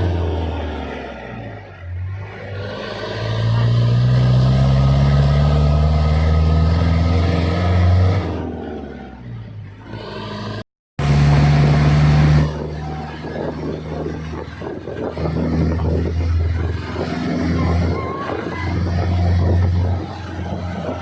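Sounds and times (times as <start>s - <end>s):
water pump engine droning: 9.9s - 21.0s.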